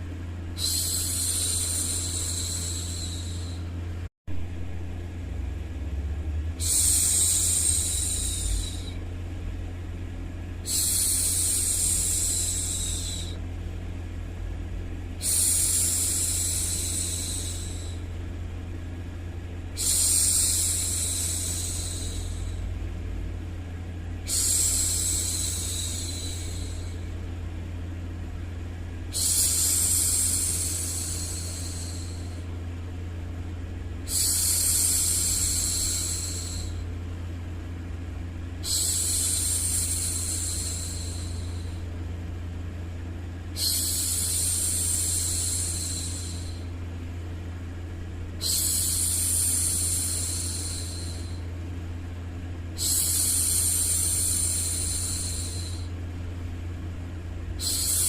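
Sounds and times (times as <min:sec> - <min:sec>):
steady low background noise: 0:00.0 - 0:58.0
woman shushing: 0:00.6 - 0:03.6, 0:06.6 - 0:09.0, 0:48.4 - 0:51.4, 0:57.6 - 0:58.0.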